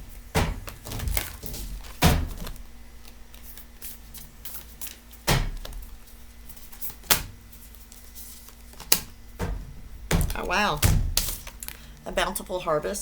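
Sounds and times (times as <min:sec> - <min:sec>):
cards being shuffled: 0:00.7 - 0:05.9.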